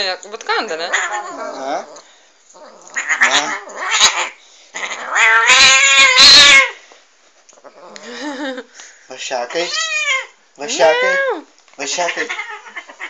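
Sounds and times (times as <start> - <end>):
cat yowling: 2.9 - 4.3, 4.9 - 6.8, 9.5 - 11.4.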